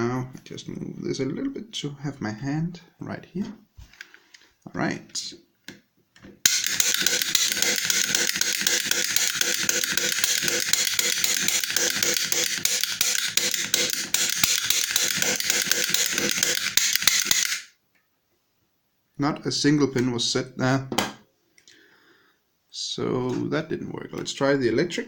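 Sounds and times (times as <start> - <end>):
lock-picking tool buzzing: 6.4 - 17.7.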